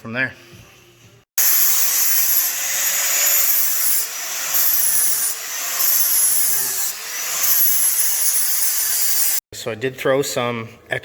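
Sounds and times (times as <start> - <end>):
angle grinder grinding metal: 1.4 - 9.4.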